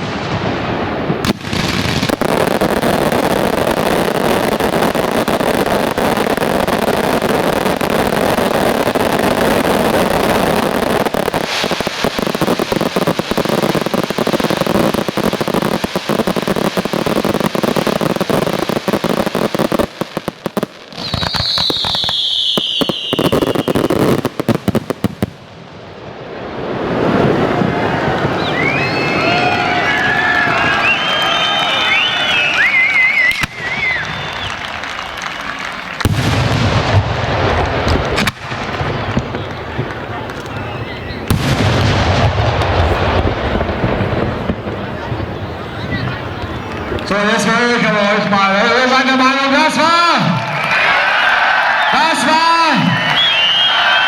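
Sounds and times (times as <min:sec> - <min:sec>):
fireworks crackling and banging: 0:00.0 - 0:54.0
falling firework whistle: 0:21.0 - 0:25.3, 0:26.7 - 0:47.5, 0:49.6 - 0:54.0.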